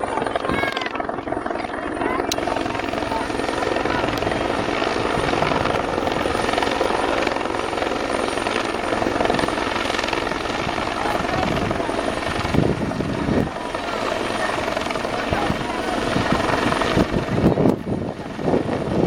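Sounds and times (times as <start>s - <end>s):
helicopter rotor and turbines: 0.0s - 19.0s.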